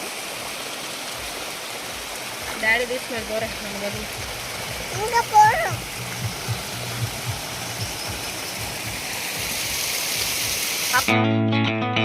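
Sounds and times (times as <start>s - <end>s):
waterfall rushing: 0.0s - 11.1s
distorted electric guitar music: 5.8s - 9.0s, 11.0s - 12.0s.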